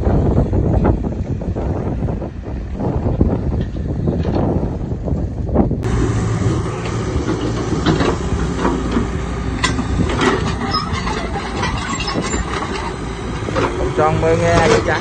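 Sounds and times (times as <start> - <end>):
excavator diesel engine rumble: 0.0 - 15.0
metal clanks and clicks: 6.8 - 15.0.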